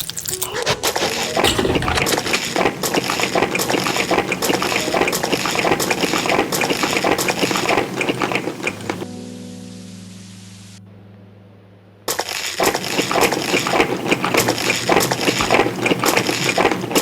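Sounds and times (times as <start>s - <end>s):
crunchy eating sounds: 0.0s - 9.0s, 12.1s - 17.0s.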